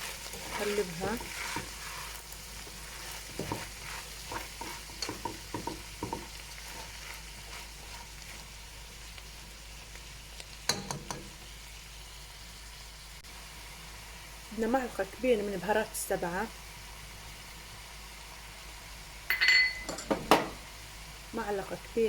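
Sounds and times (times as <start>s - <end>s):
spoon scraping and knocking pot: 0.0s - 8.1s, 10.7s - 11.3s
meat sizzling in a pot: 0.0s - 22.0s.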